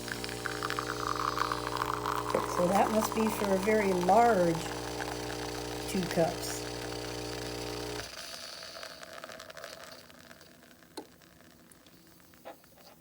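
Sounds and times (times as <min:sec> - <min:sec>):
espresso machine pump humming: 0:00.0 - 0:11.1.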